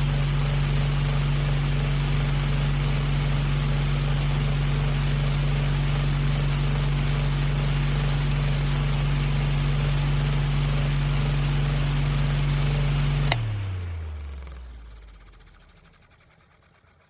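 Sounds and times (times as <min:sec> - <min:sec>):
electric fan running: 0:00.0 - 0:13.6
sharp click: 0:13.3 - 0:13.5.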